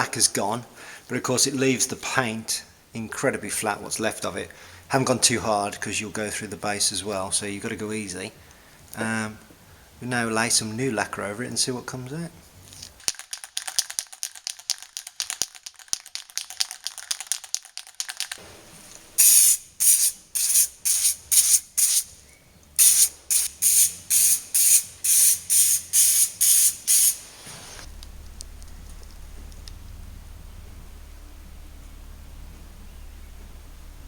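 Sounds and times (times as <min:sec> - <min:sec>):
spray can rattling: 0:13.0 - 0:22.1, 0:22.8 - 0:27.3
short hissing spray bursts: 0:18.4 - 0:22.1, 0:22.8 - 0:27.9.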